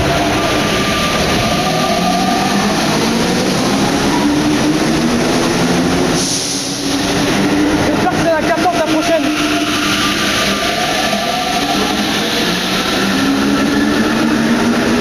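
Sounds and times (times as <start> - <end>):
metro train electric whine: 0.0 - 15.0
train rolling hiss: 0.1 - 7.4.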